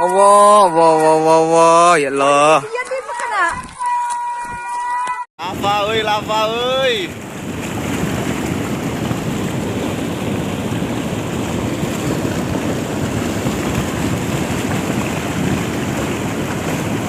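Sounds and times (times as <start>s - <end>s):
mudflow rushing down river: 5.4s - 17.0s.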